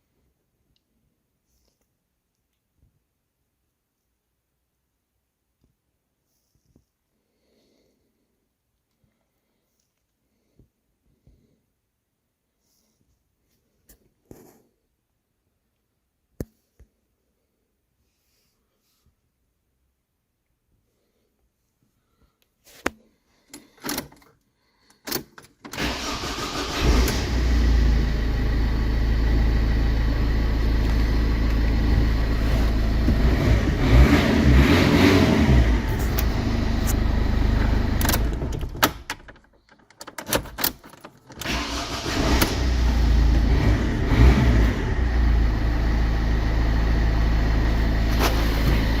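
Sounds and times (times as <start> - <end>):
car engine starting and revving: 25.8 - 38.8, 41.4 - 49.0.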